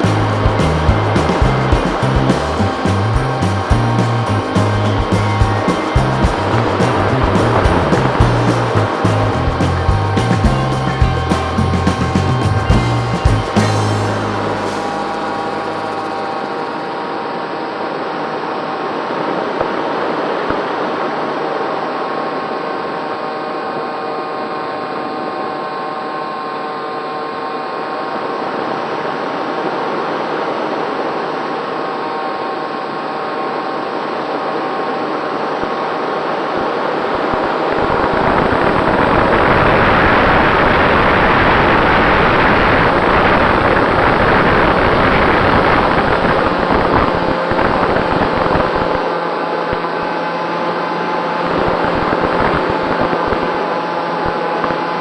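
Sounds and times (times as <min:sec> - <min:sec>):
wind noise over microphone: 0:00.0 - 0:16.3
electric motor running: 0:00.0 - 0:16.9.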